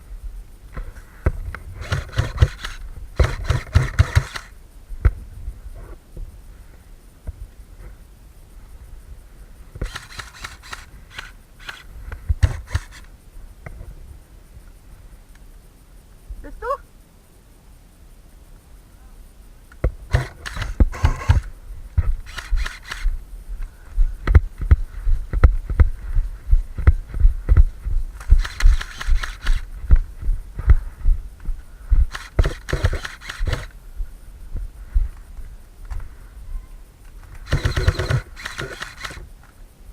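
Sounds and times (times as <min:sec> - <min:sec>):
footsteps walking: 0:21.9 - 0:32.5, 0:33.3 - 0:36.2.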